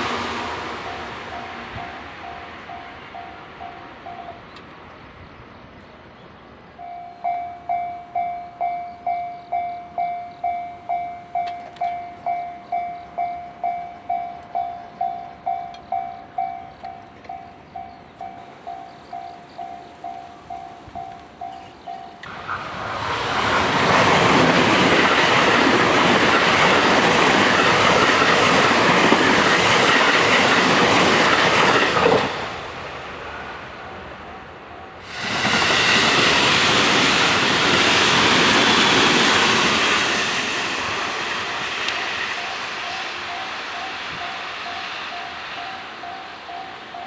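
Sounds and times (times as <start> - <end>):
level crossing warning bell: 0.0 - 4.6, 6.8 - 22.3, 42.4 - 47.0
electric train passing: 0.0 - 47.0.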